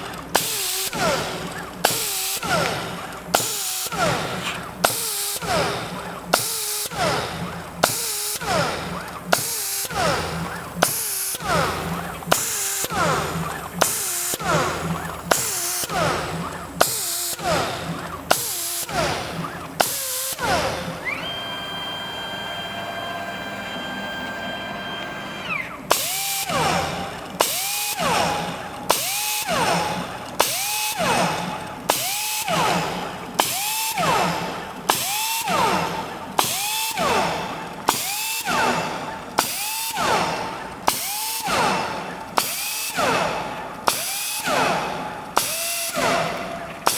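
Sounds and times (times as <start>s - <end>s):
spinning tool cutting steel plate: 0.0s - 21.2s
steady high motor whine: 0.0s - 46.9s.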